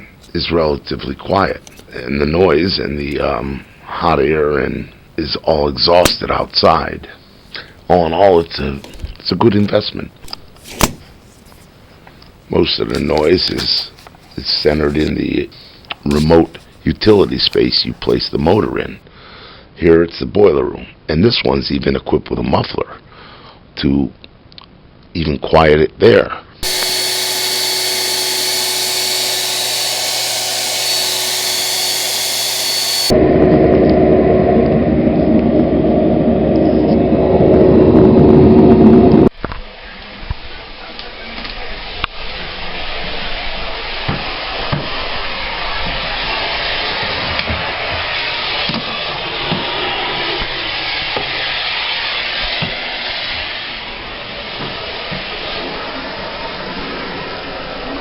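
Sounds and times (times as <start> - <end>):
vacuum cleaner whine and air rush: 26.6 - 33.4.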